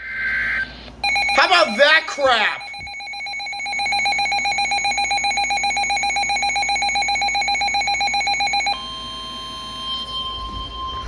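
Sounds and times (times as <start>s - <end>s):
fast pulsing electronic beep: 1.0s - 8.8s
steady warning tone: 1.0s - 11.0s.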